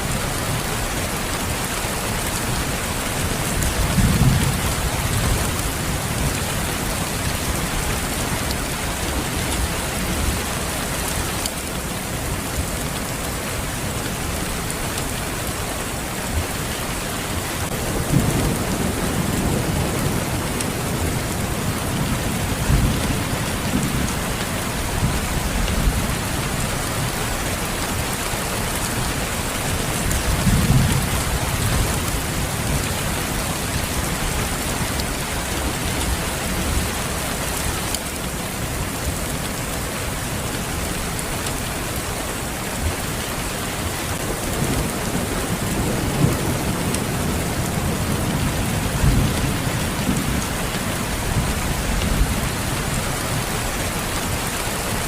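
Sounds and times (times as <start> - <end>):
steady rain falling: 0.0 - 55.0
thunder rumbling: 17.7 - 26.2.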